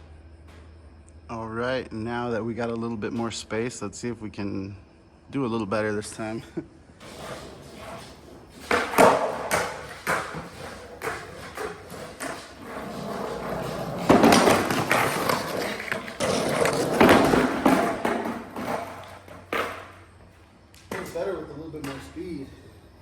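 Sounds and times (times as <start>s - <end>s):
skateboard clacks and thuds: 7.0s - 20.0s
skateboard wheels rolling and scraping: 7.0s - 22.1s.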